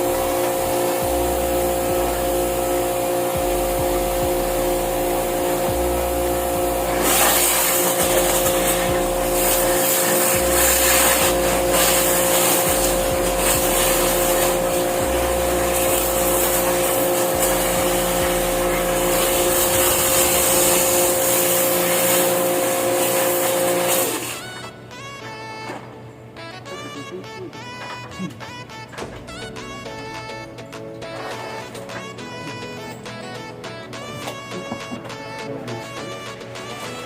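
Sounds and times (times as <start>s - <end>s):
hissing water spray: 0.0s - 24.5s
pressure washer running: 0.0s - 24.6s.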